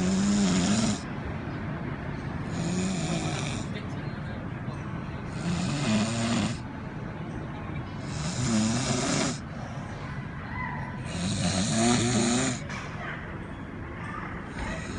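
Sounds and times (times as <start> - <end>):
man snoring heavily: 0.0 - 1.1, 2.5 - 3.7, 5.3 - 6.6, 8.0 - 9.4, 11.1 - 12.6.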